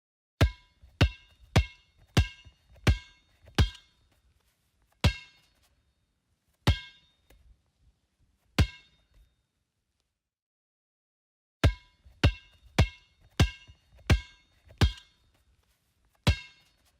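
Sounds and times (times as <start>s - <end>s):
basketball bouncing on hard floor: 11.7s - 15.0s.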